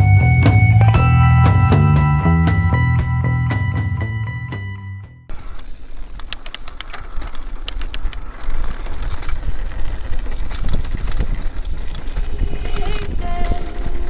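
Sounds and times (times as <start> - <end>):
sharp clicks and ticks: 5.5 - 14.0.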